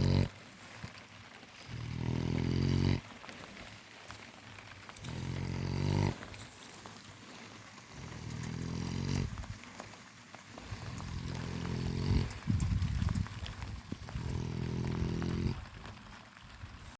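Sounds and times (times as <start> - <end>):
pig snoring: 0.0 - 0.4, 1.6 - 3.1, 5.0 - 6.5, 7.8 - 9.6, 10.6 - 13.2, 14.0 - 15.7.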